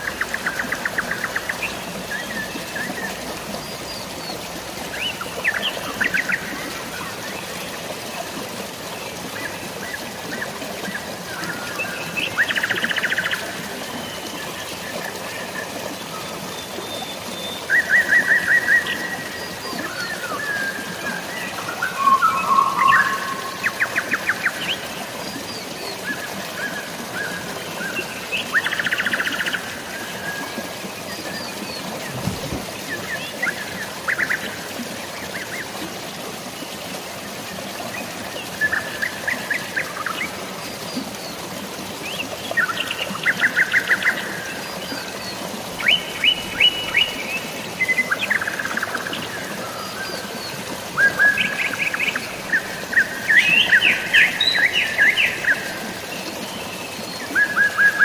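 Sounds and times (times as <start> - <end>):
drizzling rain: 0.0 - 58.0
flowing water: 0.0 - 58.0
songbirds chirping: 15.7 - 34.6.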